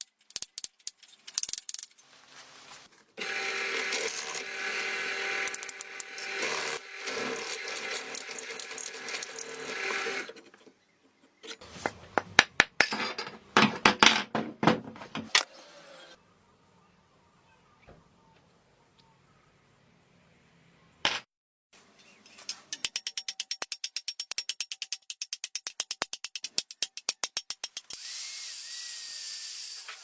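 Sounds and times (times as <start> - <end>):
workshop tool running: 3.2 - 10.6
sharp knocks and clatters: 11.8 - 15.3.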